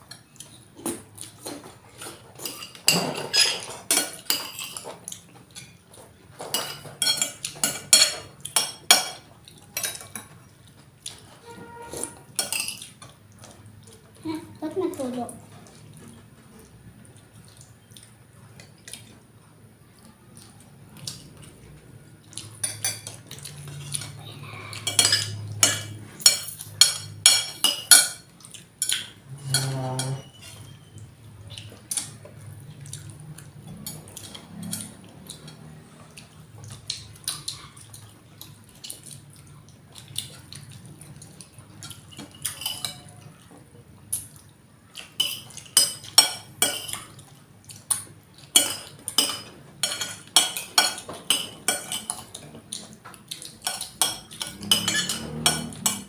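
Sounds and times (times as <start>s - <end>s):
cutlery clinking on plate: 2.4s - 5.0s, 24.8s - 31.0s, 41.8s - 43.2s, 48.5s - 52.4s, 53.6s - 56.0s.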